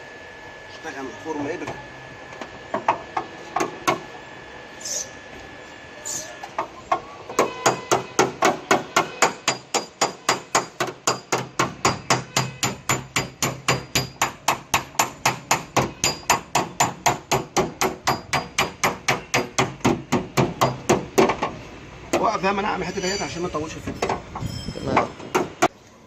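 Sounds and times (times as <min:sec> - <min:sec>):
hammer tapping on sheet metal: 0:07.4 - 0:21.4.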